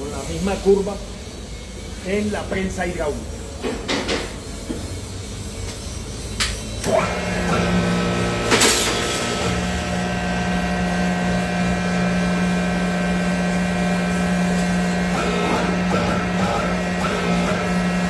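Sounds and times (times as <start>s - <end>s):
hydraulic pump motor humming: 6.7s - 18.0s.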